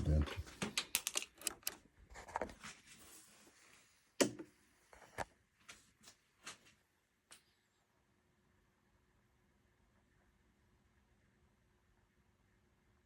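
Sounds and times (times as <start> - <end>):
soft rustle: 2.2 - 4.1.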